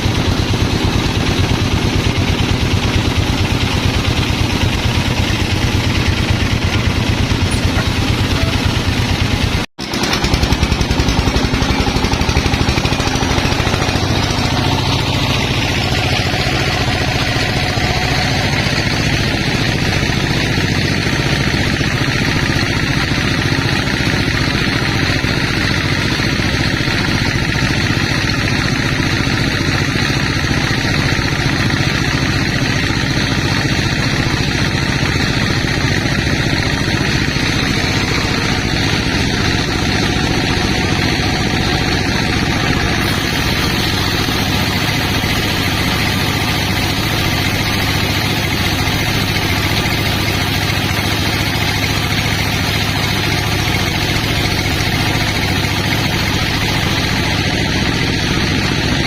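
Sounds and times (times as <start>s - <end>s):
sawmill engine pulsing: 0.0s - 59.0s
machine whine dropping in pitch: 3.5s - 20.8s, 35.2s - 57.8s.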